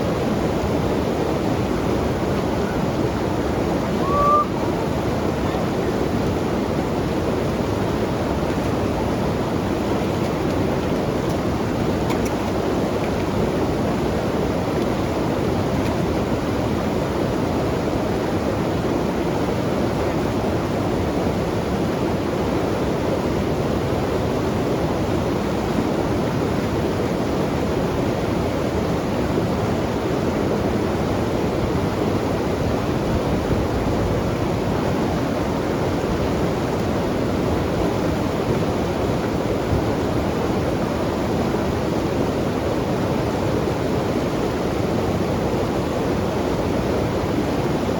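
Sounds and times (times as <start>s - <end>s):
river rushing: 0.0s - 47.9s.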